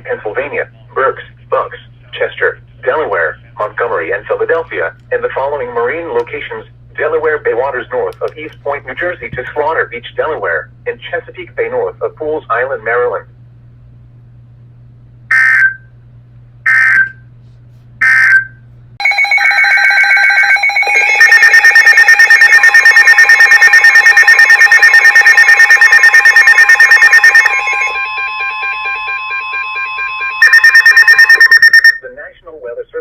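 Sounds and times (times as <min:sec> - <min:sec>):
rapid alert beeping: 0:18.0 - 0:32.0
steady electronic alert tone: 0:19.0 - 0:32.0
warbling digital data bursts: 0:20.8 - 0:27.9, 0:30.4 - 0:32.0.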